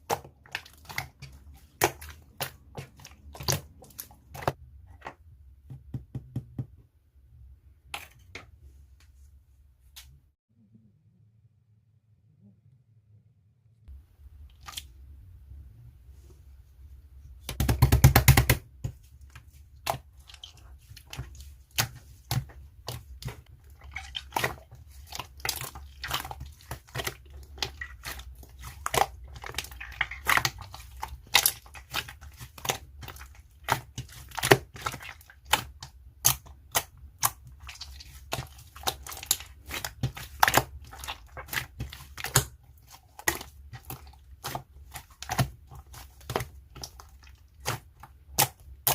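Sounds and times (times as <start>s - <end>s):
slime squelching: 0.0s - 5.1s, 13.9s - 15.2s, 17.4s - 48.9s.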